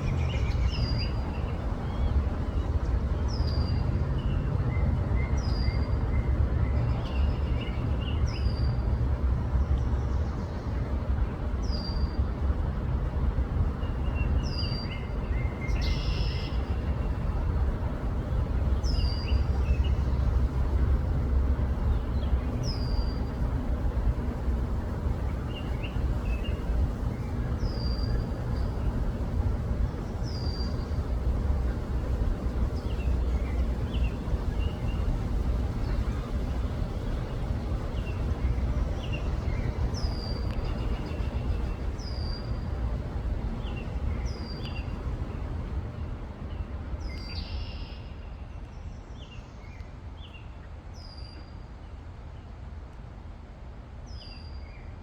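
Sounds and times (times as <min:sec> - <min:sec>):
steady low rumble: 0:12.2 - 0:47.8.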